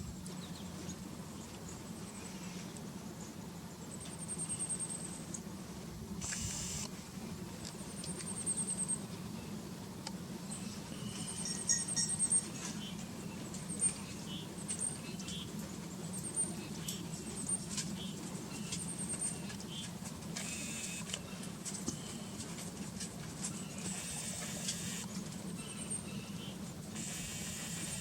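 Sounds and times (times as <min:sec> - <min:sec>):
steady low hum: 0:00.0 - 0:28.0
small birds trilling and chirping: 0:00.2 - 0:05.4, 0:10.4 - 0:22.5, 0:23.5 - 0:28.0.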